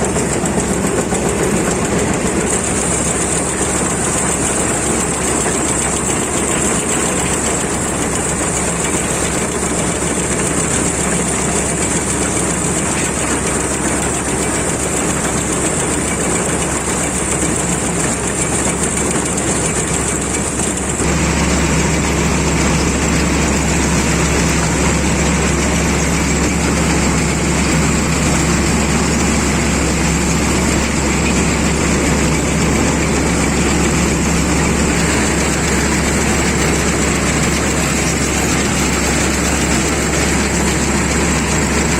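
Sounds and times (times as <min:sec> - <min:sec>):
combine harvester running: 0:00.0 - 0:41.9.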